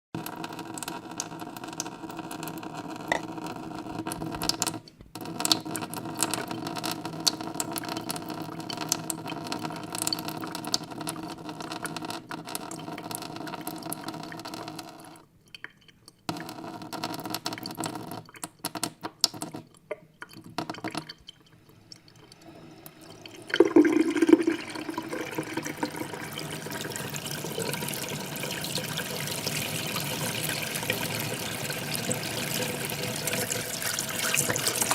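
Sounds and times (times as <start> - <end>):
tap water running into sink: 16.3 - 34.9
water dripping: 17.4 - 34.9.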